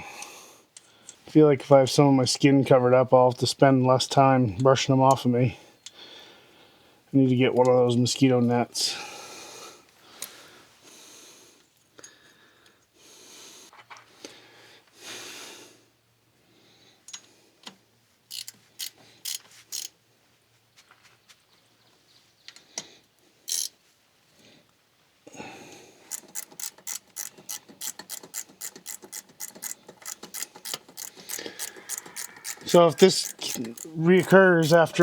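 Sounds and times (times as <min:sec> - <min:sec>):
ratchet wrench clicking: 0:18.3 - 0:20.0, 0:23.5 - 0:23.8, 0:26.1 - 0:35.0.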